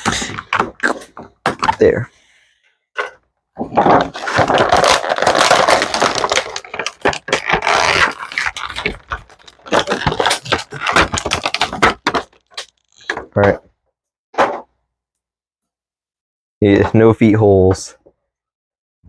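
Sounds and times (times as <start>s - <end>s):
plastic packaging crinkling: 3.8s - 13.1s
sharp crackles and clicks: 4.4s - 13.1s.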